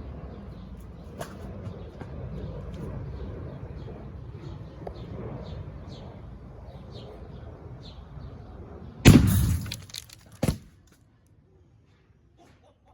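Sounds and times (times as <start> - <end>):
loud explosion blast: 9.1 - 9.8
glass and metal breaking: 9.1 - 10.6.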